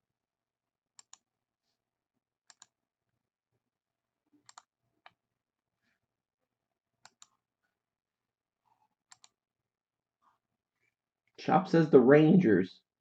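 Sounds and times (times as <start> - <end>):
computer mouse clicks: 1.0 - 1.2, 2.5 - 2.7, 4.4 - 5.2, 7.0 - 7.4, 9.1 - 9.4.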